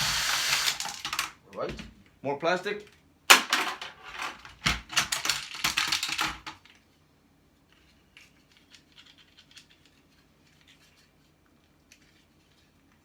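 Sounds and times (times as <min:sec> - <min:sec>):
plastic and metal parts rattling: 0:03.3 - 0:06.8, 0:08.2 - 0:11.0.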